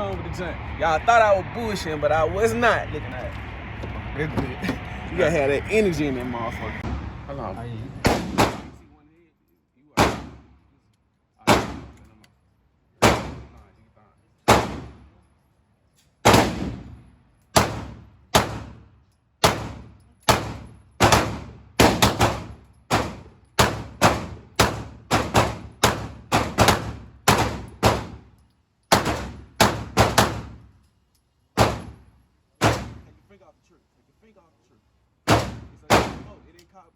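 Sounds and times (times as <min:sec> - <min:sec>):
handgun shots echoing indoors: 0:10.0 - 0:10.5, 0:28.8 - 0:30.5.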